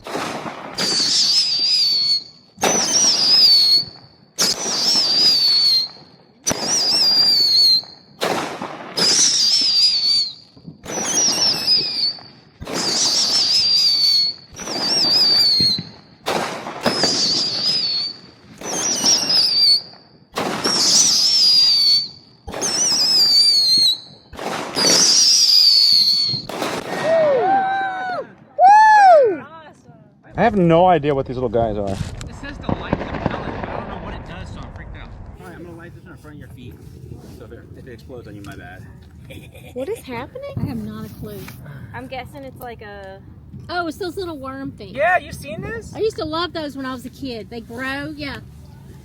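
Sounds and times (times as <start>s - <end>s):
firework whistling bursts: 0.0s - 27.9s.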